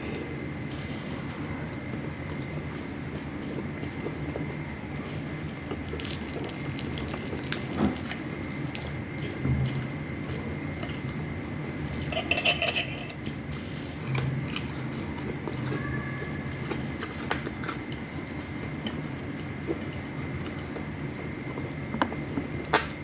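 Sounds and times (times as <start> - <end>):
utensils clinking on a plate: 11.9 - 13.4.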